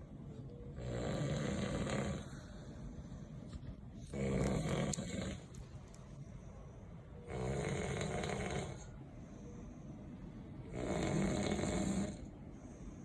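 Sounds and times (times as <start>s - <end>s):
man snoring loudly: 0.8s - 2.4s, 4.1s - 5.5s, 7.3s - 8.9s, 10.7s - 12.3s.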